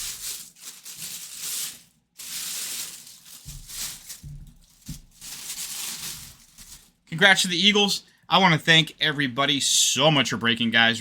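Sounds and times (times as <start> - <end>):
rustling and handling noise: 0.0 - 7.5.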